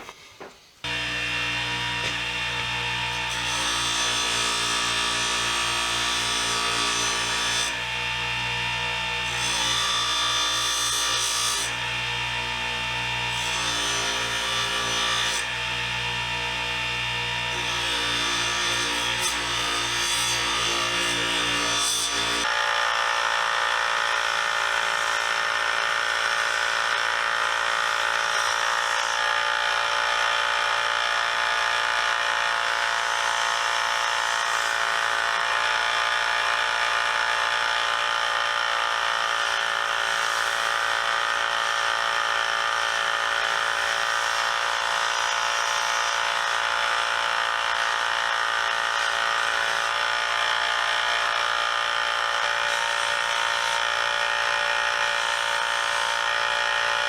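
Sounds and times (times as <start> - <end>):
electric motor whining: 0.9 - 4.2.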